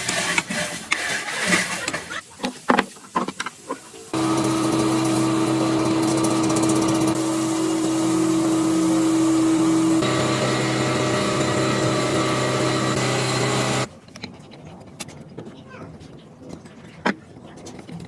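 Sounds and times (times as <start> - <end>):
electric motor humming: 4.1 - 13.9.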